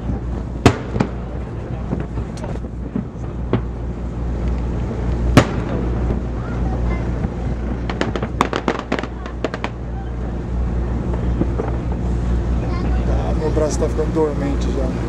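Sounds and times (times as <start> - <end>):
firework bang: 0.0 - 3.8, 5.2 - 9.8
low rumble: 0.0 - 15.0
crackling firework pops: 0.6 - 3.8, 5.2 - 6.2, 7.2 - 9.8, 11.1 - 12.0.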